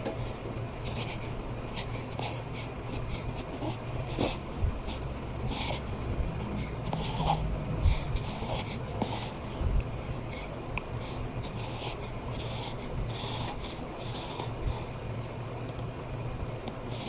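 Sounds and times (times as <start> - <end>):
baby snoring and snorting: 0.8 - 9.6, 10.3 - 14.9
baby whimpering: 1.8 - 5.9.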